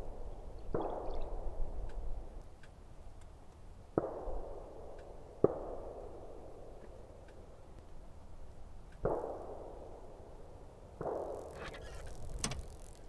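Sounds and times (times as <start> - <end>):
distant gunshots with echoes: 3.9 - 6.7, 9.0 - 10.0, 11.0 - 11.5.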